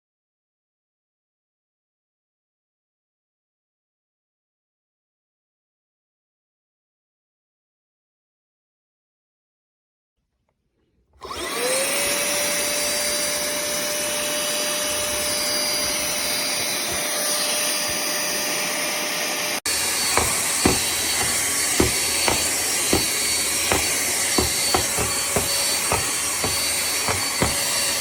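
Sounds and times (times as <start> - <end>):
handheld vacuum motor whine: 11.2 - 28.0
short knocks: 20.0 - 27.9.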